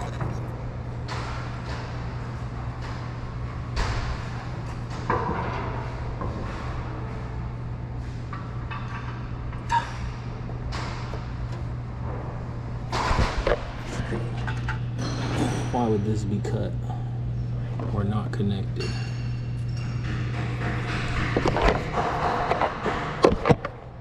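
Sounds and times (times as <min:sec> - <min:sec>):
low hum: 0:00.0 - 0:24.0
clicks knocks and rustles of handling: 0:20.5 - 0:23.7.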